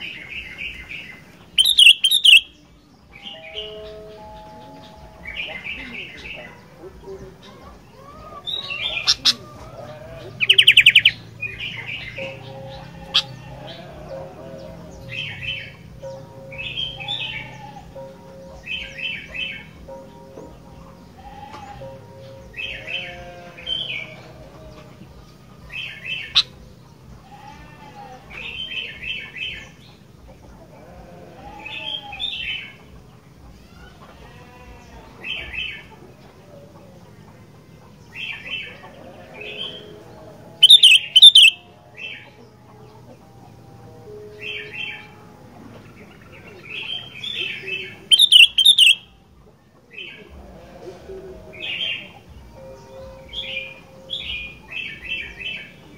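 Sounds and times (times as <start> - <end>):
harsh bird calls: 0.0 - 49.2
bird chattering chirps: 1.4 - 2.6, 7.9 - 13.9, 40.6 - 41.6, 46.8 - 49.1.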